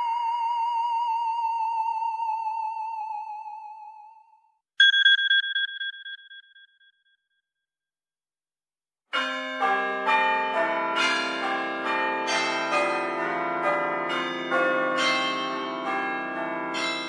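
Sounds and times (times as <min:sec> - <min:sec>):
high bell-like chime: 0:04.8 - 0:07.2
church bells ringtone: 0:09.1 - 0:17.0.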